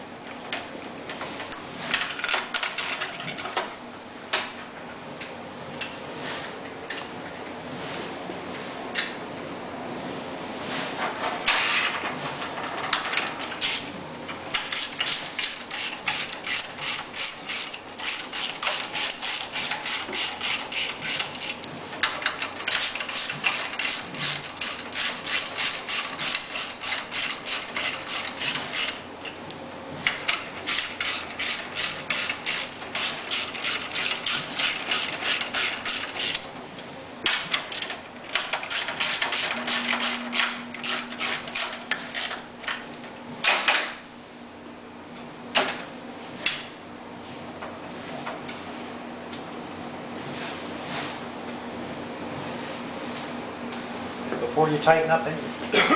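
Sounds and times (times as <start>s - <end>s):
ratchet wrench clicking: 14.6s - 21.6s, 22.7s - 29.0s, 30.7s - 36.4s, 38.3s - 42.3s.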